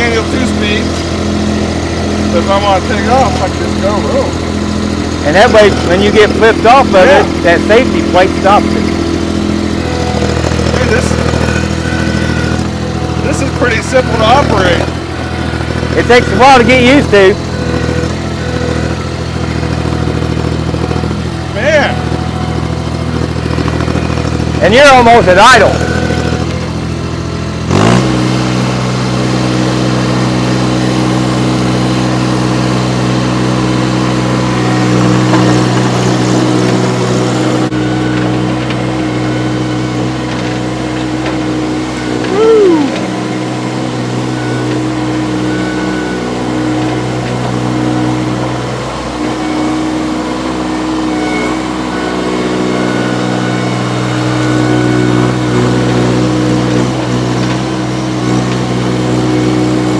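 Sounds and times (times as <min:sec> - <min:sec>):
diesel engine revving: 0:00.0 - 0:59.9
short falling squeal: 0:37.8 - 0:48.7, 0:49.3 - 0:57.2.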